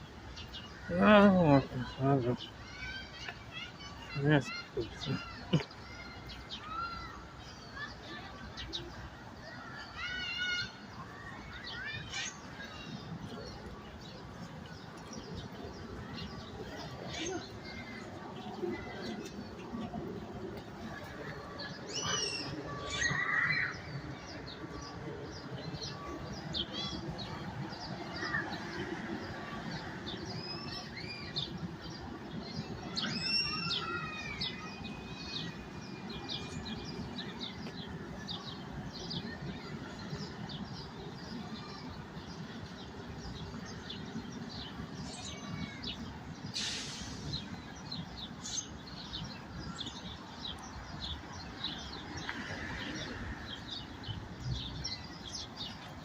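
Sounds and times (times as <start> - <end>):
birds chirping and calling: 0.0 - 56.0
brief hiss: 46.5 - 47.4.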